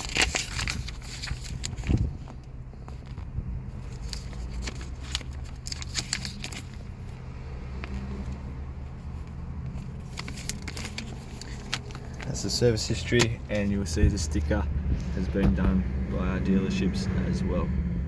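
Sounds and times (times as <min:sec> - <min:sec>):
pages flicking: 0:00.0 - 0:02.0, 0:04.1 - 0:06.8, 0:10.1 - 0:12.3
car engine idling: 0:00.0 - 0:18.0.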